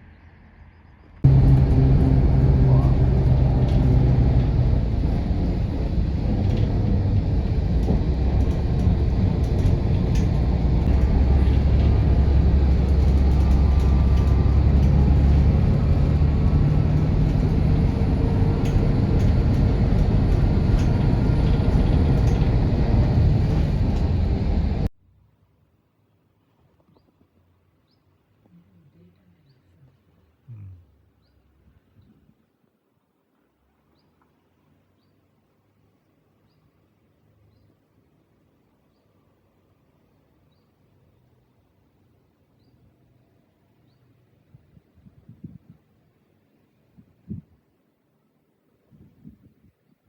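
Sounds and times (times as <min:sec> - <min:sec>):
vehicle engine and road rumble: 0:00.1 - 0:25.0
faint rattles: 0:01.3 - 0:24.9.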